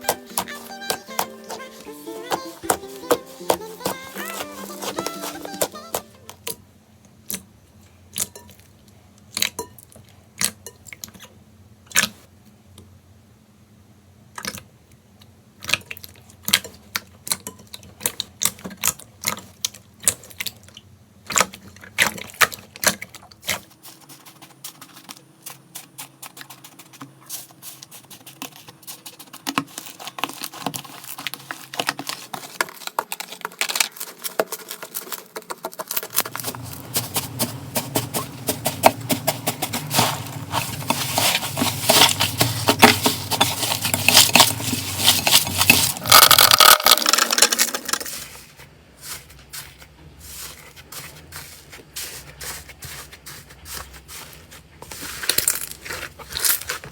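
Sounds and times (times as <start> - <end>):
slime popping and crackling: 27.9 - 48.0.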